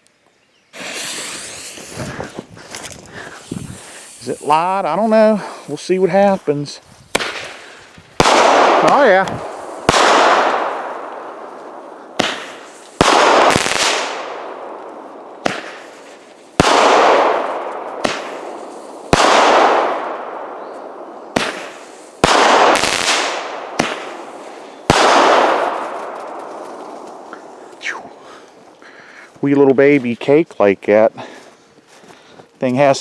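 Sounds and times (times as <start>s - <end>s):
firework bangs: 0.8s - 5.7s, 7.1s - 27.3s.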